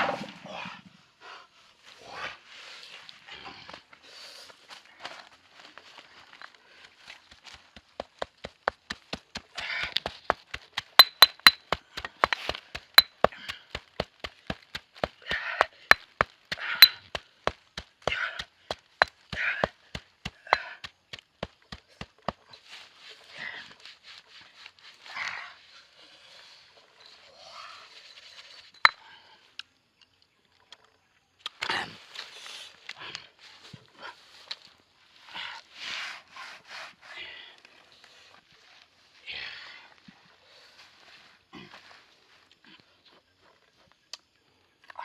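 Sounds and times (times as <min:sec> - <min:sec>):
rapid sharp taps: 0:07.8 - 0:22.4.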